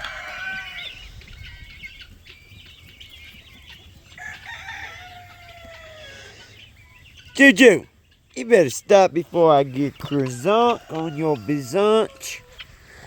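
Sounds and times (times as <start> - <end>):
rooster crowing: 0.0 - 1.0, 4.2 - 6.4, 10.3 - 12.6
chickens clucking: 0.0 - 13.0.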